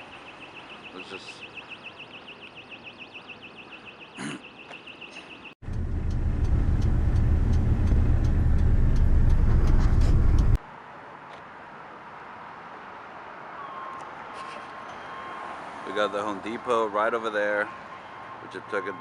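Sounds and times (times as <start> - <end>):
loud low rumble: 5.6 - 10.6.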